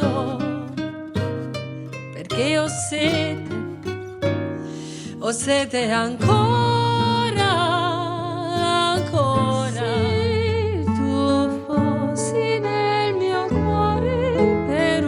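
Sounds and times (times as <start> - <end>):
soprano singing with vibrato: 0.0 - 1.0, 2.1 - 3.9, 5.0 - 15.0
guitars playing slowly: 0.0 - 15.0.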